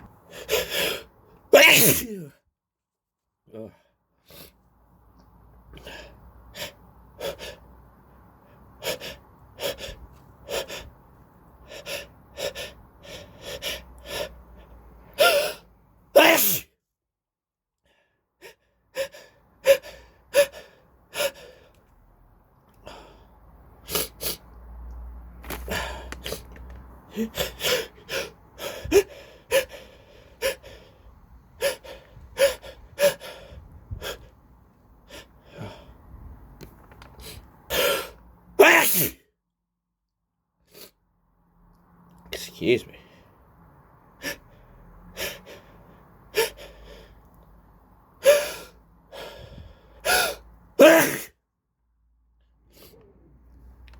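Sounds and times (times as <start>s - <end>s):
person sneezing: 0.5s - 2.4s, 16.2s - 16.7s, 37.2s - 39.2s, 50.0s - 51.4s.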